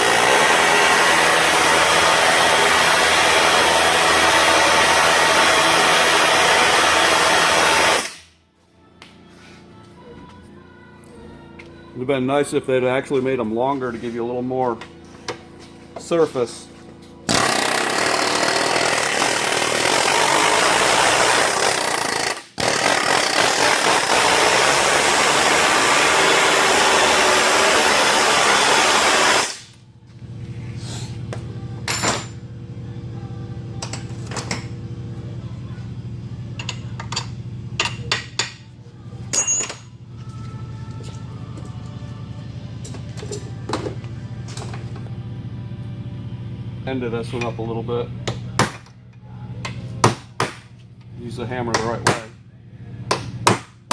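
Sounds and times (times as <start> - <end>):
air hammer hammering rivets: 0.0 - 8.3, 17.3 - 29.7, 49.6 - 50.8, 53.1 - 53.9.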